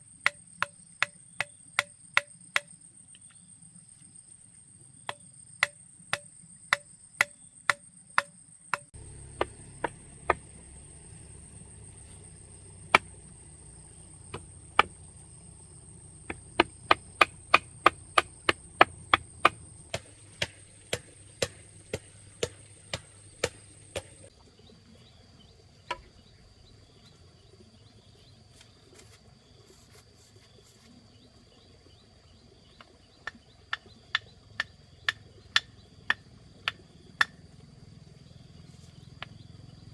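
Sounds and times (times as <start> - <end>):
sharp blows on wood: 5.6 - 11.0, 11.6 - 24.3.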